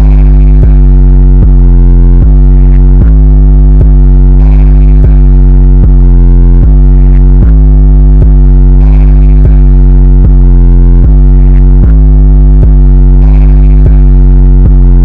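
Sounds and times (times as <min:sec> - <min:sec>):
distorted bass-boosted electronic music: 0:00.0 - 0:15.0.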